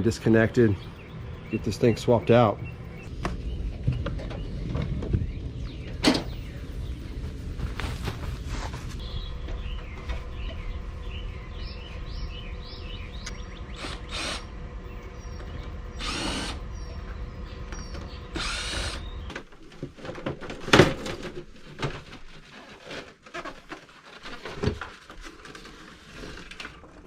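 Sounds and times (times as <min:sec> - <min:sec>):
low hum: 0:00.0 - 0:19.5
cordless drill running: 0:13.2 - 0:14.6, 0:15.3 - 0:16.8, 0:18.3 - 0:19.2.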